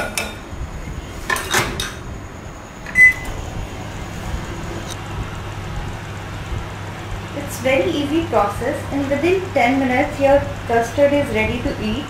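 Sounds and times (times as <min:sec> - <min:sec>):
microwave oven hum: 0:00.0 - 0:12.0
microwave beep: 0:02.8 - 0:03.4.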